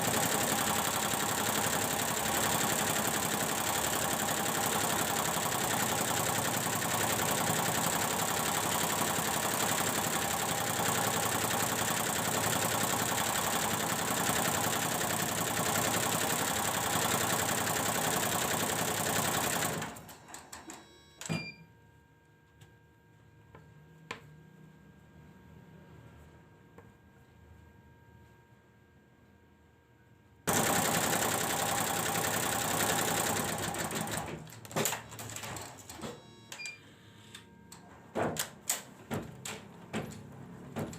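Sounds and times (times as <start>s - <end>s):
embroidery machine running: 30.5s - 34.3s.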